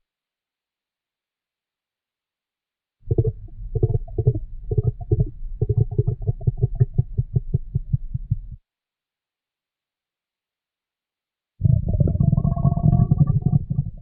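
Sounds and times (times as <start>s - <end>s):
stomach growling: 3.1s - 8.0s, 11.6s - 14.0s.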